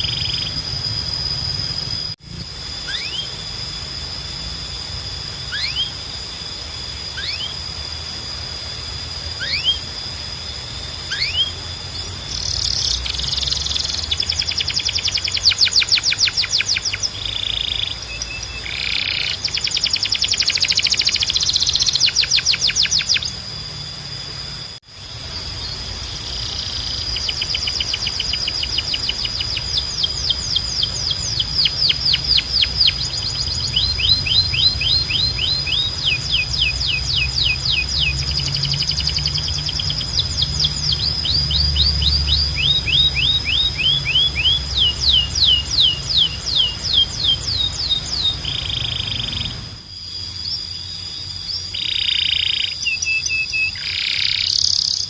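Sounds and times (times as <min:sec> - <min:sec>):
canary singing: 0:00.0 - 0:02.2, 0:02.8 - 0:55.0.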